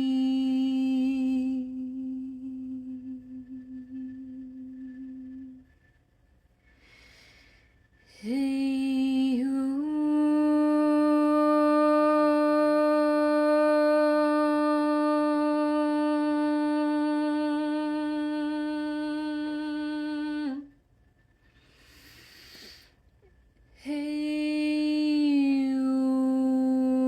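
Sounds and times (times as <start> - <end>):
woman singing a long note: 0.0 - 5.6, 8.2 - 20.7, 23.8 - 27.0
woman taking a breath: 6.7 - 7.8, 21.5 - 23.0.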